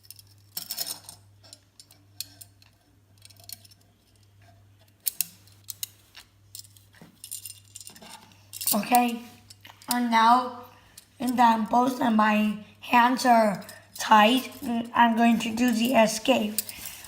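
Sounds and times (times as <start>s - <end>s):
toy handcuffs clicking and rattling: 0.0s - 4.3s, 5.0s - 10.0s, 13.6s - 17.0s.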